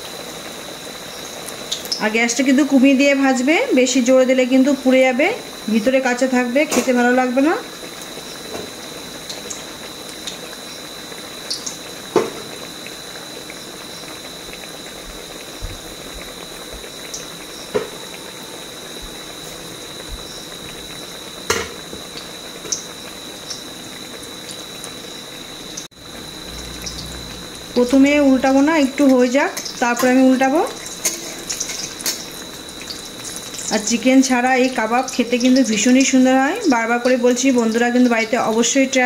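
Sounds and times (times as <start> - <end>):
food sizzling in hot oil: 0.0 - 39.0
oil crackling: 7.8 - 38.8.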